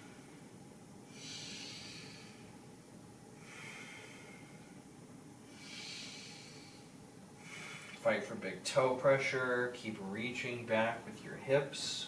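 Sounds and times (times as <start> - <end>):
person breathing through nose: 1.1 - 2.5, 5.5 - 8.0.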